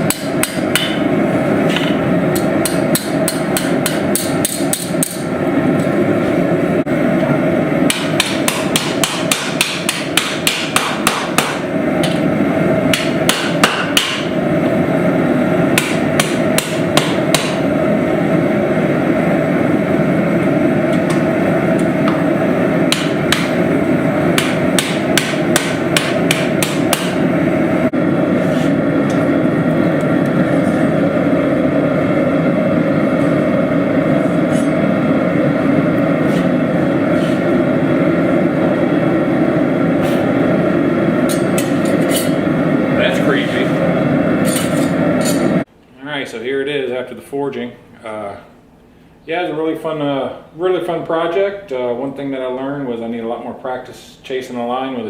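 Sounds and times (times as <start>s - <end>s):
hammer striking steel on anvil: 0.0s - 1.1s, 1.7s - 5.3s, 7.8s - 12.2s, 12.9s - 14.3s, 15.8s - 17.6s, 22.9s - 23.6s, 24.3s - 27.2s, 41.2s - 42.4s.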